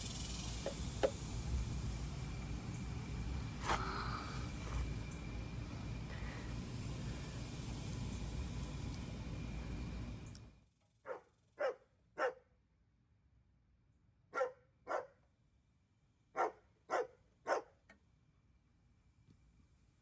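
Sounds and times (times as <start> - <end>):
dog barking: 11.1 - 12.4, 14.3 - 15.2, 16.4 - 17.8.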